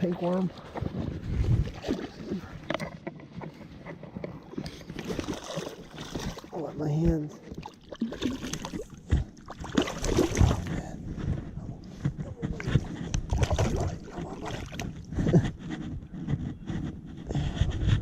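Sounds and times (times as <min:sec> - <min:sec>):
wind buffeting microphone: 0:00.0 - 0:02.8, 0:08.7 - 0:18.0
microphone handling noise: 0:00.0 - 0:05.4, 0:08.5 - 0:18.0.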